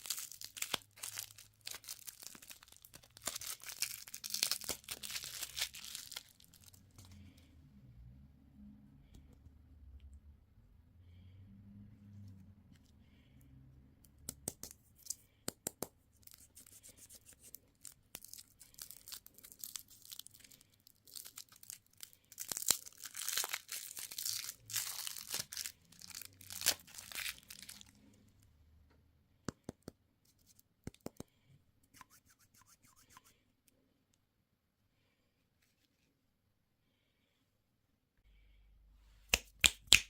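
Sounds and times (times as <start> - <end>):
candy wrapper tearing and crinkling: 0.0 - 6.9, 17.7 - 28.0.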